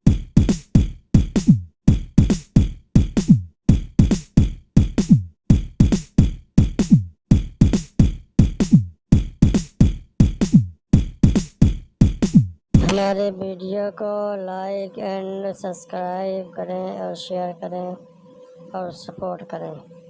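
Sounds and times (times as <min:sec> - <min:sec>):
electronic drum-machine beat: 0:00.0 - 0:13.4.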